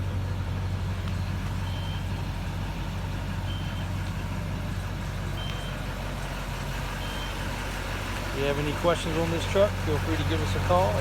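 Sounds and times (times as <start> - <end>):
diesel engine idling: 0.0 - 11.0
backup alarm beeps: 1.6 - 2.2, 5.4 - 5.8, 7.0 - 7.4.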